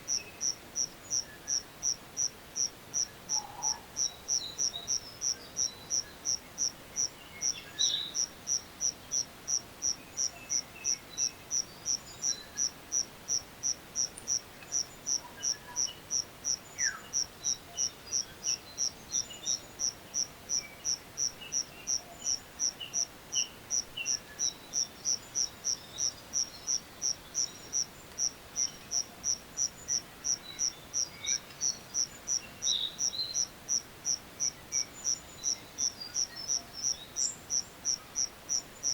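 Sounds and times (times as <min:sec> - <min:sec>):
insect chirping rhythmically: 0:00.0 - 0:38.9
faint bird calls: 0:03.0 - 0:09.3.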